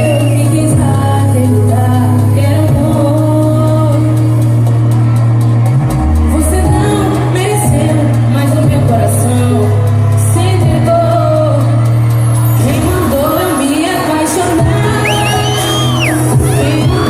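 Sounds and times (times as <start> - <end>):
heavy bass: 0.0 - 17.0
person singing: 12.6 - 17.0.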